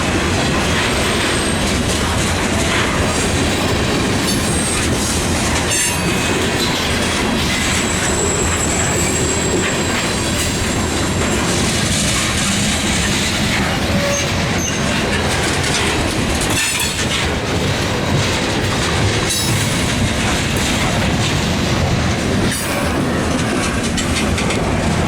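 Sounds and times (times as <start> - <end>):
freight train rumbling past: 0.0 - 25.0
high wheel squeal: 4.3 - 15.2
wheels clattering over rail: 8.9 - 25.0.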